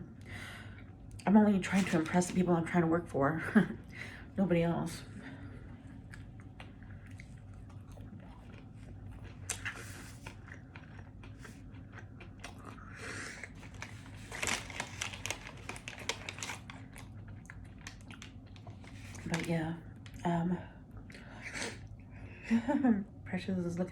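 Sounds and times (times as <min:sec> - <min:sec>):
person chewing crispy food: 0:05.6 - 0:20.2.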